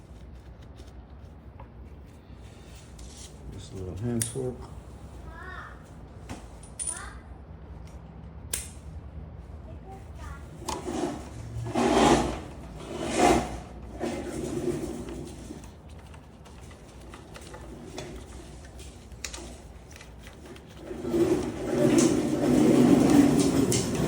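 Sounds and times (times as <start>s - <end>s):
parts rattling and clicking: 6.4s - 7.1s, 10.6s - 24.0s
metal parts clattering and scraping: 10.8s - 15.6s, 17.4s - 24.0s.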